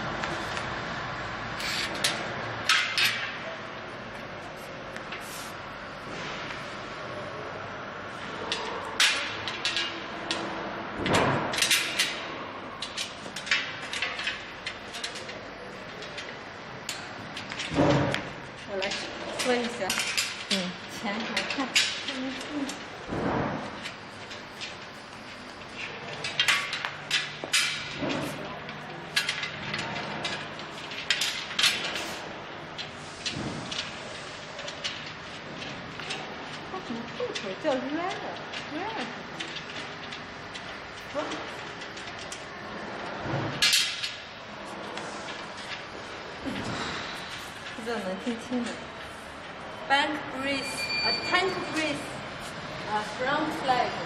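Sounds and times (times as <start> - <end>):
scrape of frame parts: 1.6 - 2.2, 4.5 - 6.5
metal parts clicking and clinking: 8.5 - 44.3.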